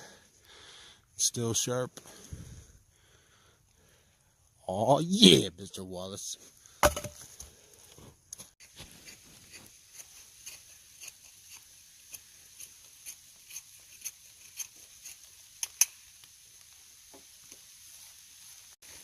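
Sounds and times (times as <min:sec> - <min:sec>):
knife blade shaving wood: 0:08.6 - 0:15.8.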